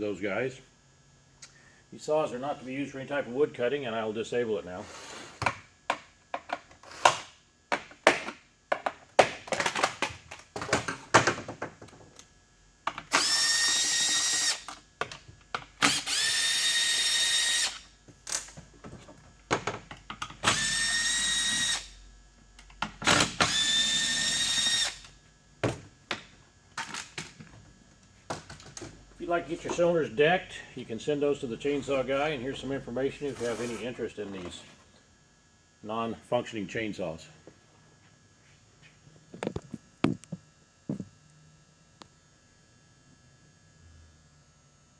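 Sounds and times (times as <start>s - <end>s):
power drill whine: 13.1s - 14.8s, 15.8s - 17.9s, 20.4s - 22.0s, 23.0s - 25.1s.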